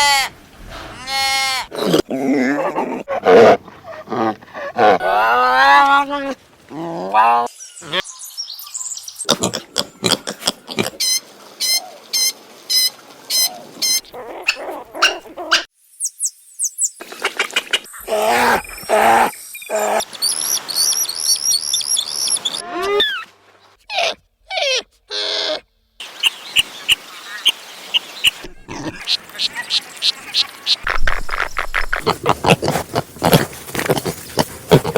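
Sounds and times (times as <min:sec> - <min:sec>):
pitched animal calls: 0:13.3 - 0:15.7, 0:17.2 - 0:20.1, 0:23.9 - 0:25.6
bird chirps: 0:16.0 - 0:17.0, 0:18.6 - 0:22.6.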